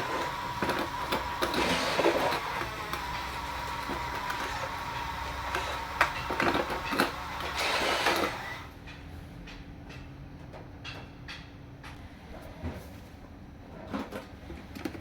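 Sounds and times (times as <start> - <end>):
small electric motors whirring: 0.0 - 8.7.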